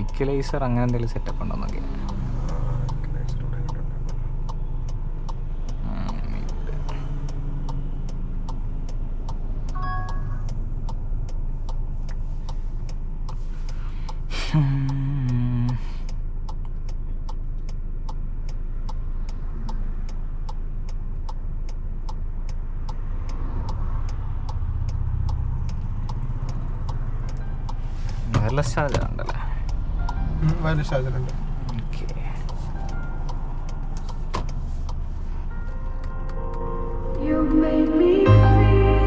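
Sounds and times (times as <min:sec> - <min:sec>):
even ticking: 0:00.0 - 0:36.6
car engine hum: 0:00.0 - 0:39.0
high two-note chime: 0:09.8 - 0:10.5
low tone stepping down in pitch: 0:29.6 - 0:31.7, 0:36.0 - 0:39.0.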